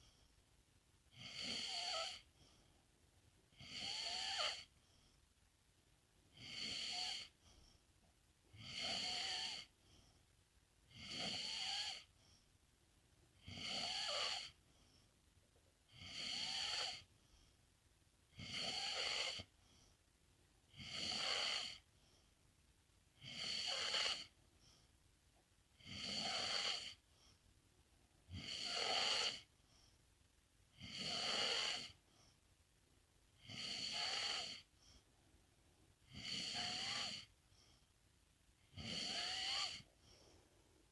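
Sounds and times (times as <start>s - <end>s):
pet snoring: 1.1s - 2.5s, 3.5s - 4.8s, 6.3s - 7.7s, 8.5s - 10.0s, 10.9s - 12.2s, 13.4s - 14.6s, 15.9s - 17.1s, 18.3s - 19.8s, 20.7s - 21.9s, 23.2s - 24.8s, 25.8s - 27.0s, 28.3s - 29.5s, 30.7s - 32.3s, 33.4s - 35.0s, 36.0s - 37.8s, 38.6s - 40.3s.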